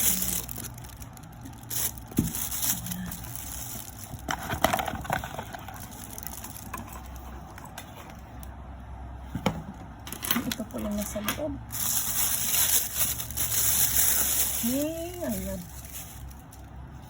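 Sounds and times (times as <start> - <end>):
packaging rustling and crinkling: 0.0 - 8.5, 11.7 - 16.8.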